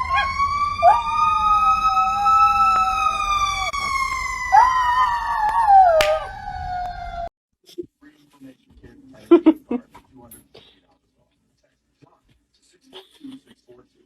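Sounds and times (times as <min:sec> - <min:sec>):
dog howling: 0:00.0 - 0:07.3
siren wailing: 0:00.0 - 0:07.3.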